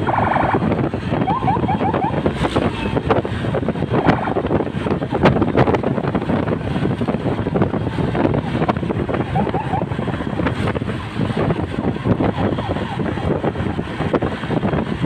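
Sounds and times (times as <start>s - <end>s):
vehicle road noise: 0.0s - 15.0s
wind buffeting microphone: 0.0s - 15.0s.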